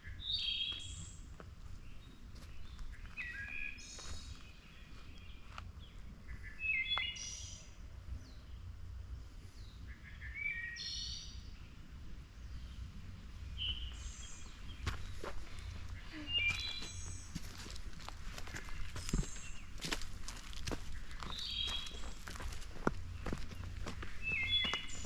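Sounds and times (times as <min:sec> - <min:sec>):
steady low rumble: 0:07.4 - 0:10.4, 0:11.2 - 0:25.0
birds singing short phrases: 0:13.6 - 0:17.4.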